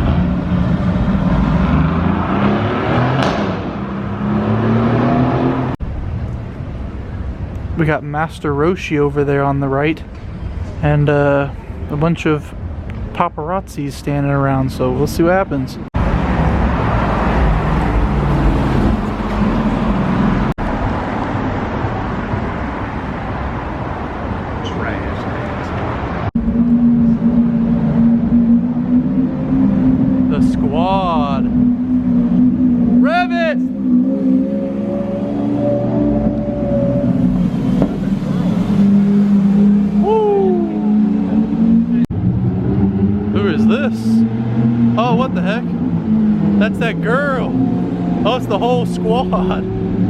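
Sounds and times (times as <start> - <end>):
car engine accelerating: 0.0 - 5.8, 24.7 - 50.0
street traffic noise: 0.0 - 50.0.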